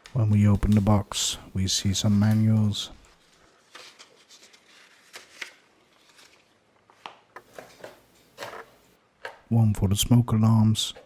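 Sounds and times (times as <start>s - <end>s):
paper and cardboard rustling: 0.2s - 6.7s.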